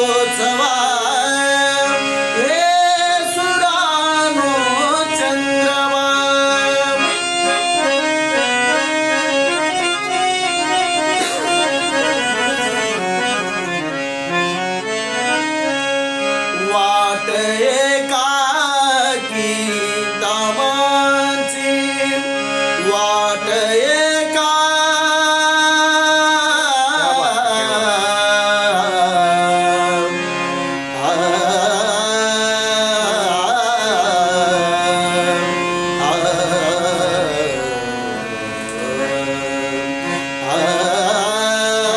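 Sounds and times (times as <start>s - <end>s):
man singing folk song: 0.0s - 7.7s, 16.5s - 30.2s, 30.9s - 38.2s, 38.8s - 41.9s
reed instrument drone: 0.0s - 41.9s.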